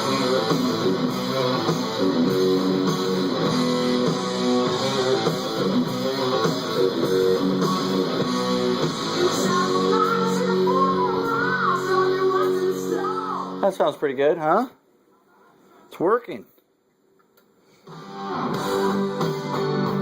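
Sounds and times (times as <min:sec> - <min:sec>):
guitar music through speakers: 0:00.0 - 0:13.6, 0:17.8 - 0:20.0.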